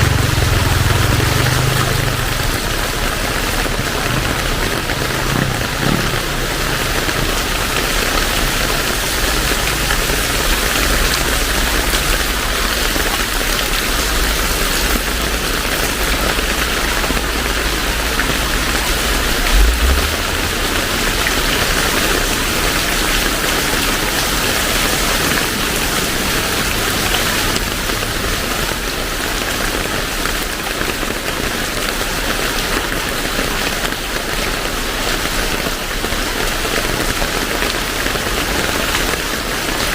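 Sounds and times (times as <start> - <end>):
low rumble: 0.0 - 12.6, 13.8 - 22.5
heavy rain: 0.0 - 39.9
low thump: 19.5 - 21.0.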